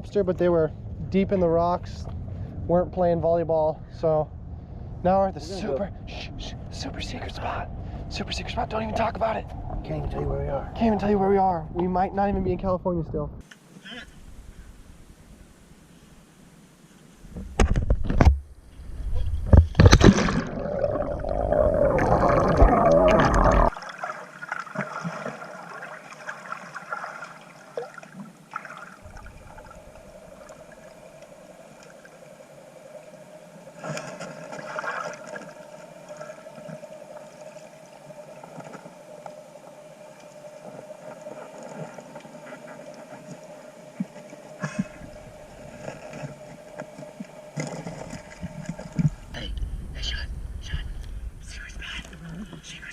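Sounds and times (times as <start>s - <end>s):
muffled underwater hum: 0.0s - 23.8s, 29.0s - 52.9s
water splashing and gurgling: 18.8s - 49.4s.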